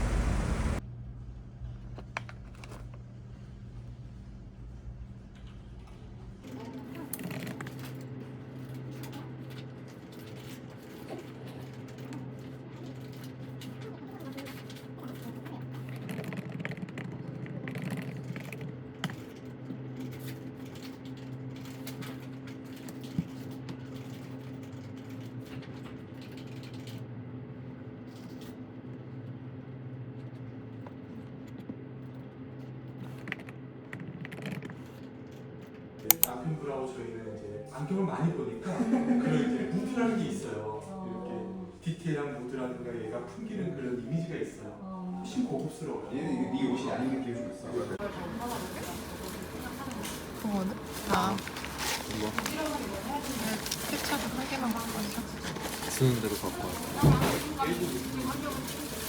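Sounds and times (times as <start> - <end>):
steady low hum: 0.0 - 6.5
keyboard key clicks: 36.1 - 36.3.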